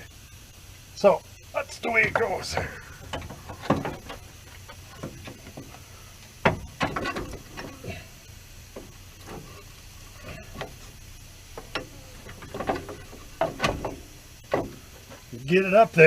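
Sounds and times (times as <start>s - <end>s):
metallic knocks and clunks: 1.8s - 8.0s, 11.5s - 15.3s.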